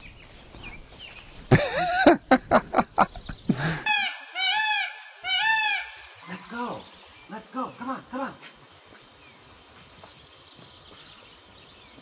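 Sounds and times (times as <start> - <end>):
peafowl calling: 1.5 - 6.7.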